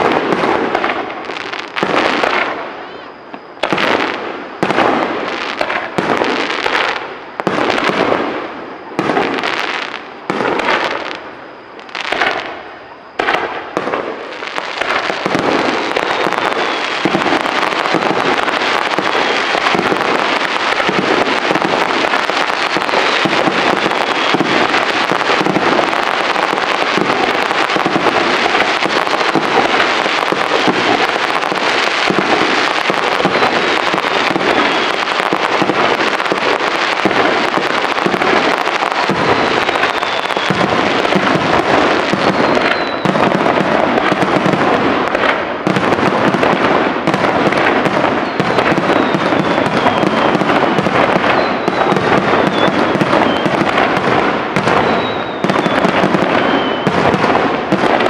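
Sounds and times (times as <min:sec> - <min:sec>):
fireworks crackling: 0:00.0 - 0:58.0
firework shells bursting: 0:14.6 - 0:58.0.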